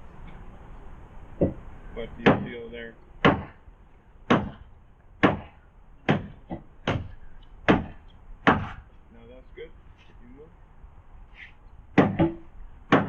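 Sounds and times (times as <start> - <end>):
hammer blows: 4.2 - 9.0.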